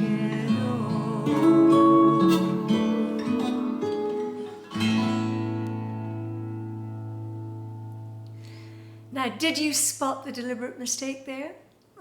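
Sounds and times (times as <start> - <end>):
acoustic guitar playing: 0.0 - 9.4.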